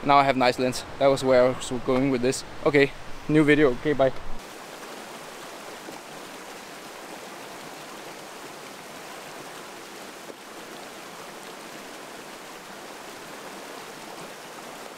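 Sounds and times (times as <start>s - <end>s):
waterfall rushing: 4.4s - 14.9s.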